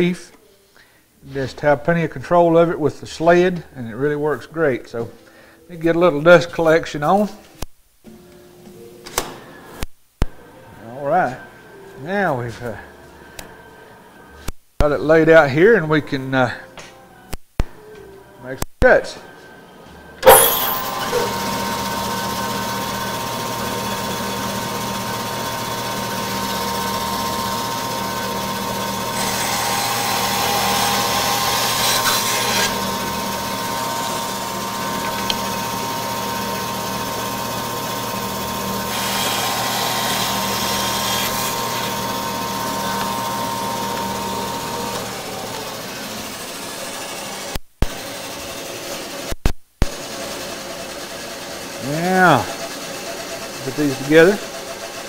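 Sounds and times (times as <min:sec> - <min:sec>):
blade cutting wood: 0:20.2 - 0:48.6
bandsaw and dust collector hum: 0:20.2 - 0:55.0.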